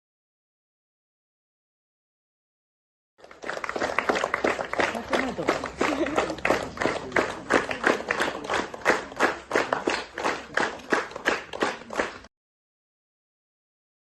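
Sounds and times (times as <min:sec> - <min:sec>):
crowd clapping in rhythm: 0:03.2 - 0:12.3.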